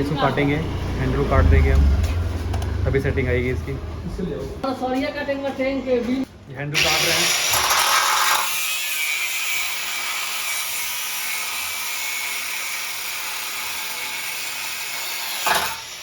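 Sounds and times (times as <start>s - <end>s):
angle grinder cutting steel: 6.8s - 16.0s.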